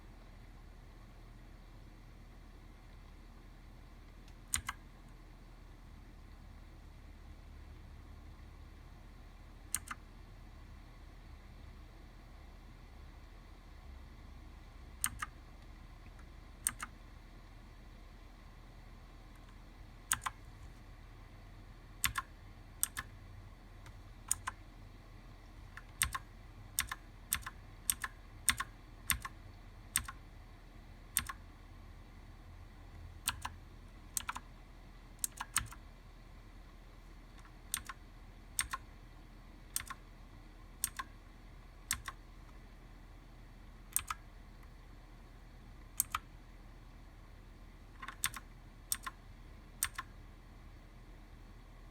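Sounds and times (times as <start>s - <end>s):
mechanical keyboard clicks: 4.3s - 4.9s, 9.7s - 10.1s, 15.0s - 15.4s, 16.2s - 17.0s, 19.4s - 20.4s, 22.0s - 23.1s, 23.8s - 24.6s, 25.7s - 30.2s, 31.1s - 31.5s, 33.2s - 34.5s, 35.2s - 35.9s, 37.4s - 38.9s, 39.7s - 40.1s, 40.8s - 41.2s, 41.8s - 42.2s, 43.9s - 44.3s, 45.9s - 46.3s, 48.0s - 49.2s, 49.8s - 50.2s.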